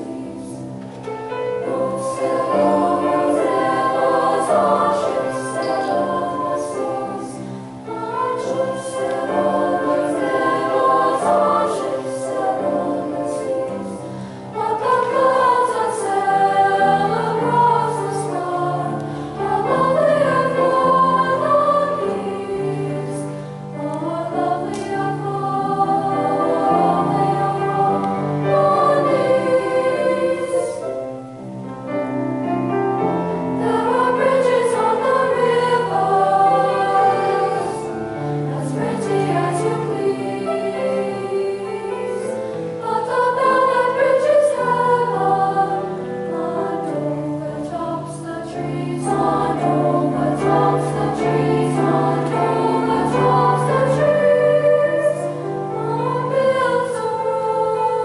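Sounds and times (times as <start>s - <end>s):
choir singing in harmony: 0.0s - 58.0s.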